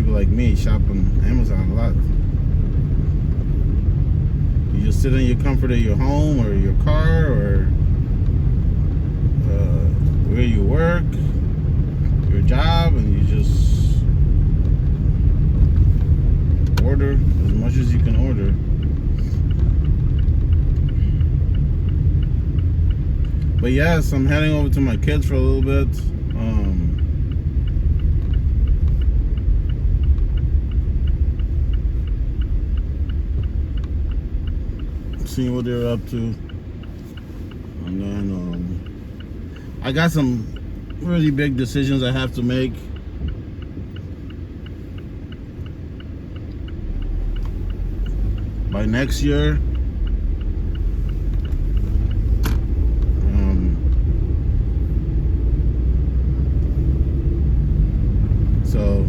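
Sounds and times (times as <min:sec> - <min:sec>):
car cabin road rumble: 0:00.0 - 0:59.0
turn signal ticking: 0:00.0 - 0:59.0.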